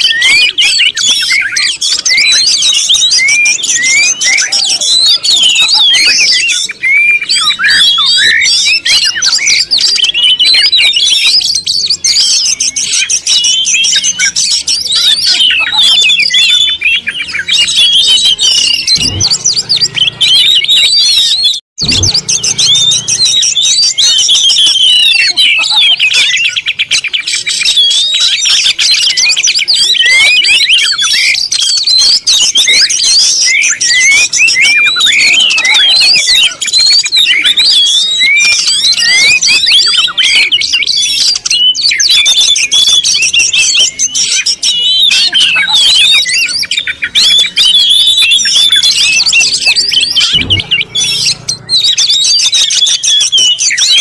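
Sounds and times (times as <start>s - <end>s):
small birds chirping: 0.0s - 54.0s
low thump: 19.0s - 20.0s, 50.2s - 51.4s.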